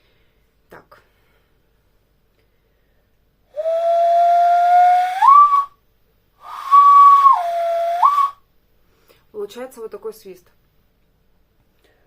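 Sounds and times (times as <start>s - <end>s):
hand whistle notes: 3.6s - 5.8s, 6.4s - 8.4s.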